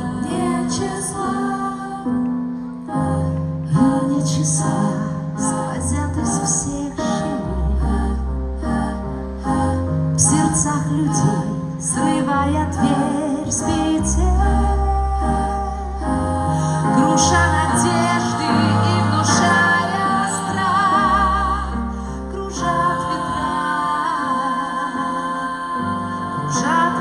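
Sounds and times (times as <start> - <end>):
bass line accompaniment: 3.0 - 24.8
woman singing: 10.2 - 27.0.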